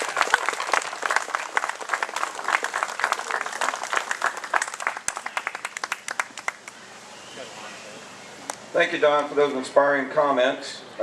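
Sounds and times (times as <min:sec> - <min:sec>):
crowd applauding: 0:00.0 - 0:06.8.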